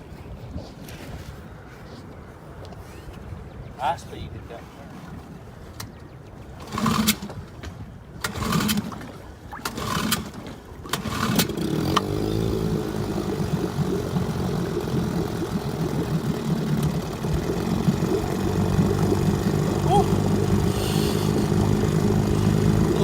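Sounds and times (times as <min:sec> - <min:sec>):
small engine cranking: 0:06.6 - 0:07.4, 0:08.2 - 0:09.0, 0:09.7 - 0:23.0
small engine running: 0:06.6 - 0:07.4, 0:08.2 - 0:08.9, 0:09.7 - 0:23.0.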